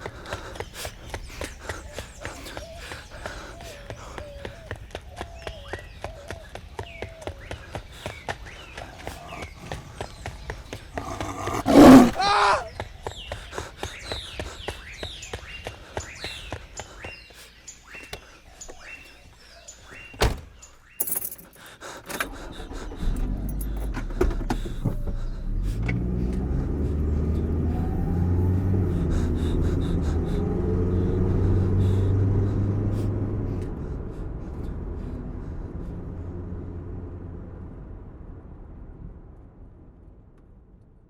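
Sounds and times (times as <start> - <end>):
keys jangling: 21.0 - 22.3, 23.1 - 24.0
car engine rumbling: 22.1 - 40.7.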